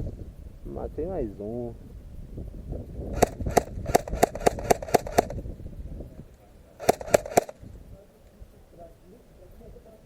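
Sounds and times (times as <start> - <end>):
airsoft gun shots: 3.1 - 5.4, 6.8 - 7.6.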